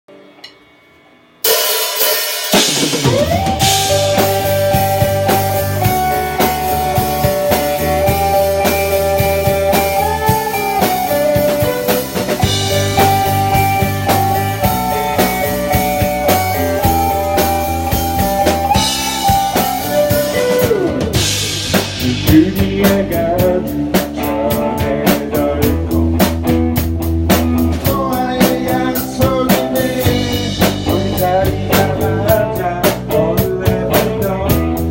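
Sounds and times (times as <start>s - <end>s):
drum kit with rimshots: 0.1s - 34.9s
electric bass: 2.6s - 34.9s
saxophone melody: 3.2s - 21.2s.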